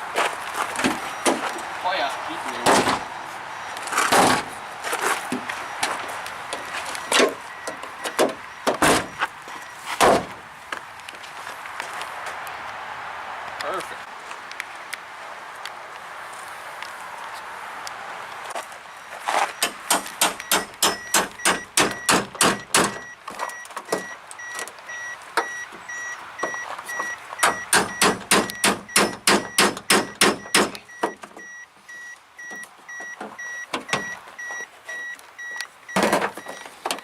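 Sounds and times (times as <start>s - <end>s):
car warning chime beeping: 1.0s - 3.8s, 5.3s - 9.9s, 18.9s - 37.0s.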